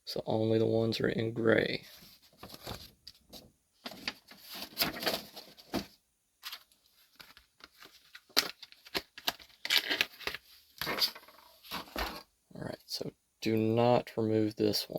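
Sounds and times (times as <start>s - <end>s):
plastic parts rustling: 2.0s - 12.3s.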